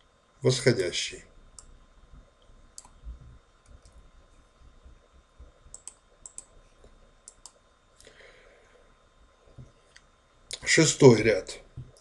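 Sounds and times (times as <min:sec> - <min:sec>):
low room rumble: 0:00.0 - 0:12.0
computer mouse clicks: 0:02.8 - 0:03.0, 0:05.7 - 0:06.5, 0:07.2 - 0:07.6.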